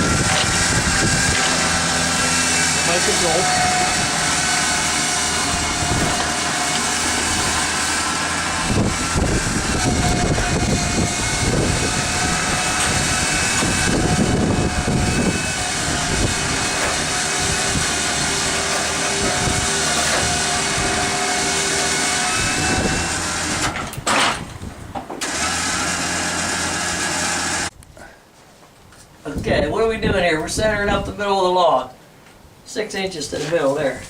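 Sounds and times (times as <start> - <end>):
motor running with faint whine: 0.0 - 23.8.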